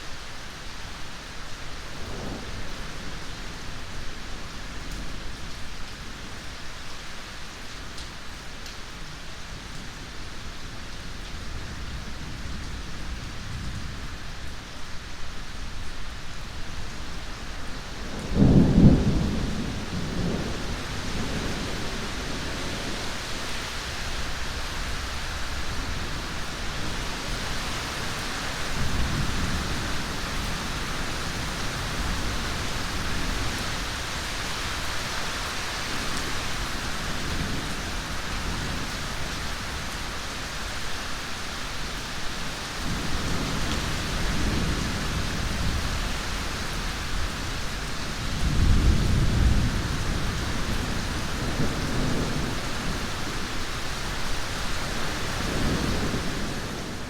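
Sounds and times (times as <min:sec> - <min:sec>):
heavy rain: 0:00.0 - 0:57.0
thunder rumbling: 0:18.0 - 0:23.1, 0:42.9 - 0:53.7.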